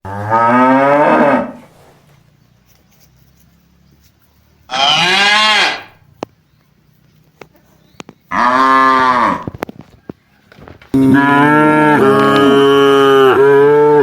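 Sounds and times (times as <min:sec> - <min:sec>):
cow mooing: 0:00.0 - 0:01.6, 0:04.7 - 0:06.0, 0:08.3 - 0:09.6, 0:11.0 - 0:14.0.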